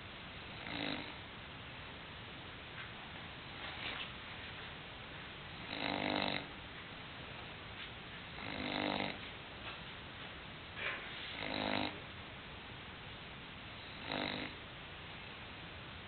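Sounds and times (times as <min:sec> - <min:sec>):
dog snoring: 0:00.5 - 0:01.2, 0:05.6 - 0:06.6, 0:08.4 - 0:09.2, 0:10.8 - 0:12.1, 0:13.8 - 0:14.6.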